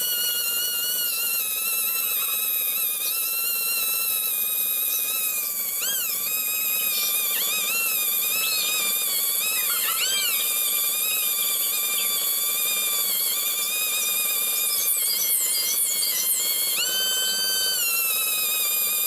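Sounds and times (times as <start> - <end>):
rotary grinder whine: 0.0 - 19.0.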